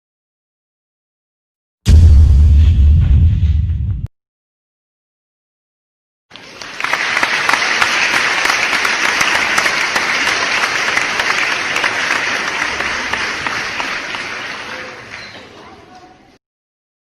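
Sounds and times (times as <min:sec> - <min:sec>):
crowd applauding: 0:06.3 - 0:16.2.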